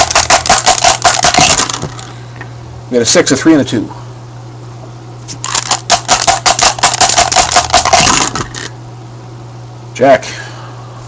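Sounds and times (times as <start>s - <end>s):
dice rattling: 0.0s - 2.1s, 5.4s - 8.7s.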